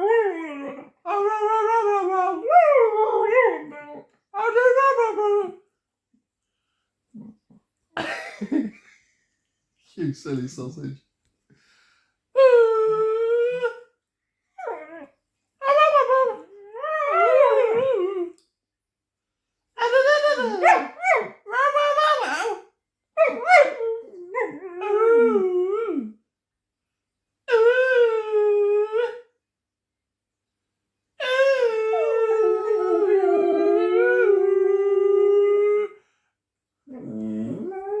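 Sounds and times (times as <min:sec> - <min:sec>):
dog howling: 0:00.0 - 0:05.6, 0:14.6 - 0:18.4, 0:19.8 - 0:26.1, 0:31.2 - 0:35.9
person howling: 0:31.5 - 0:35.0.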